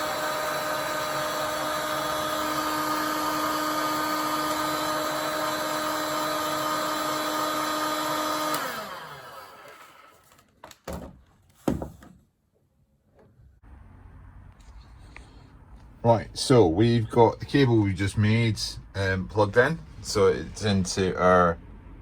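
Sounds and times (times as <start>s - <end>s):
fan winding down: 0.0s - 10.2s
heat gun blowing: 0.0s - 10.2s.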